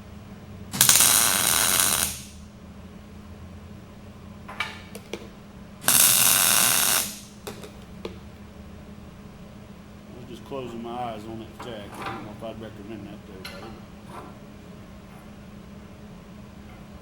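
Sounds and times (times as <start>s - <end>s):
arc welding crackle: 0.7s - 2.5s, 5.8s - 7.7s.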